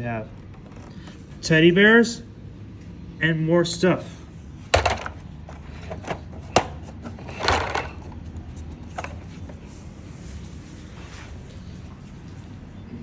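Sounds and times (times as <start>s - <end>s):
plastic toy clicks and knocks: 4.8s - 8.1s.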